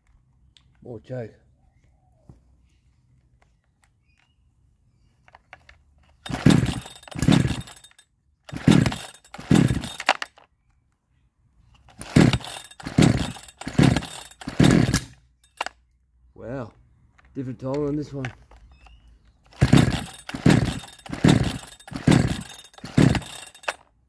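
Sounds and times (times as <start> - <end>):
chainsaw starter cord pulls: 5.3 - 10.5, 11.8 - 15.7, 17.2 - 24.0.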